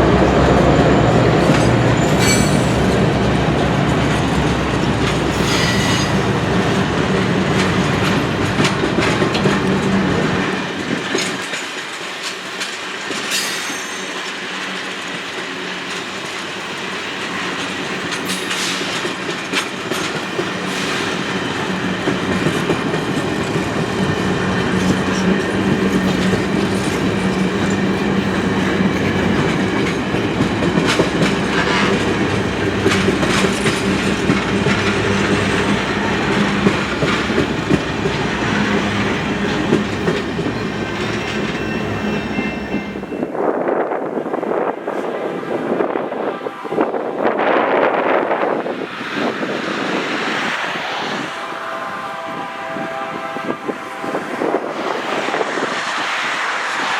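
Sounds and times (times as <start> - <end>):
high wheel squeals: 0.8 - 3.0, 34.8 - 43.3
locomotive engine rumble: 20.3 - 43.2
wheels clicking over rail joints: 21.8 - 43.2.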